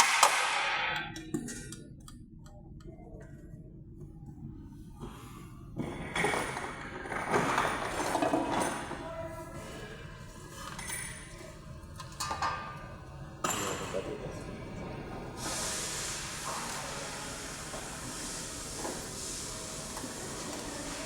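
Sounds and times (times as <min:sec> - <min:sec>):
steady high hiss: 0:15.4 - 0:21.0.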